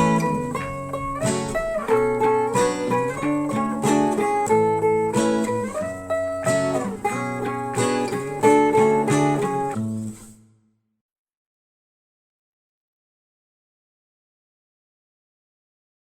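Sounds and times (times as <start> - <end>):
plucked instrumental music: 0.0 - 10.5.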